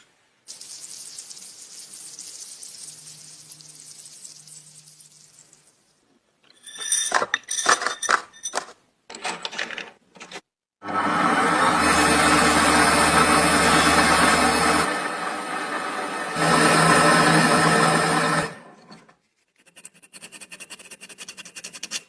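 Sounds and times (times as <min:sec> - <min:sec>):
small metal parts clicking: 0:06.4 - 0:10.4.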